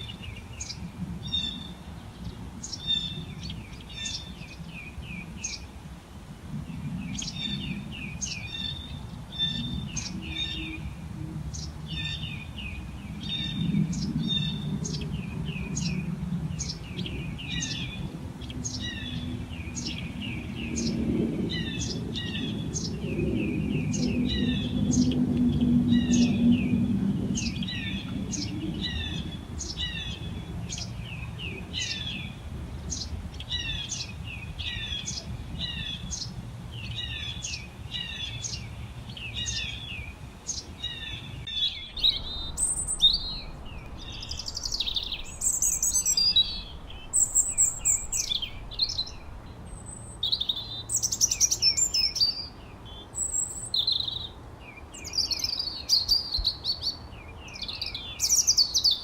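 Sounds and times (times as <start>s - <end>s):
songbirds chirping: 0.0s - 59.0s
low background rumble: 6.5s - 53.4s.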